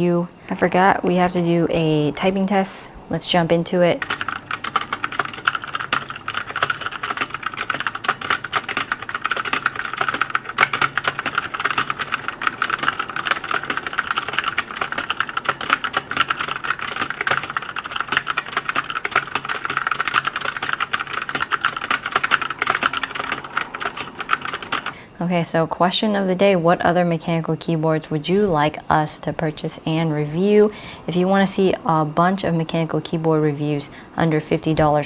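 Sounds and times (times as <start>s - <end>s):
fast typing on mechanical keyboard: 4.0s - 25.0s.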